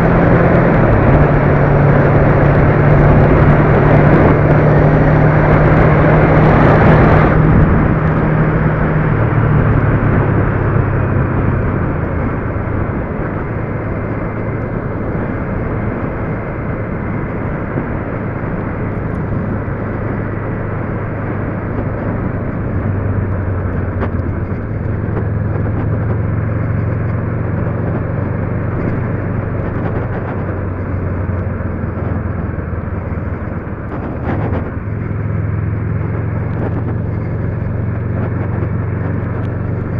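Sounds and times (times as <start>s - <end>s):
tyre and road noise: 0.0s - 39.9s
vehicle engine hum: 0.0s - 39.9s.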